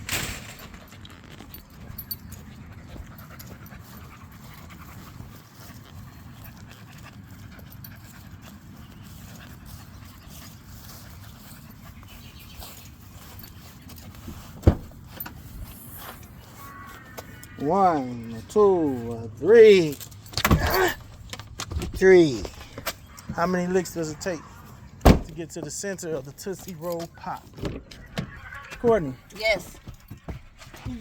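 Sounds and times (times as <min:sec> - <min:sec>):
low rumble of wind: 0:00.0 - 0:16.6, 0:18.2 - 0:26.6
dog panting: 0:02.0 - 0:15.0.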